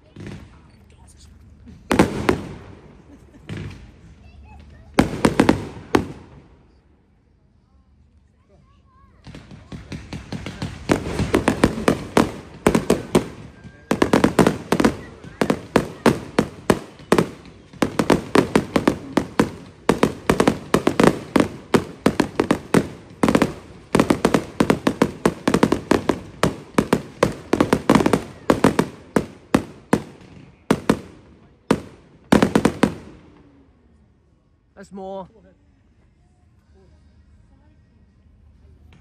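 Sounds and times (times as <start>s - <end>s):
fireworks bangs: 1.5s - 6.8s, 9.2s - 33.6s.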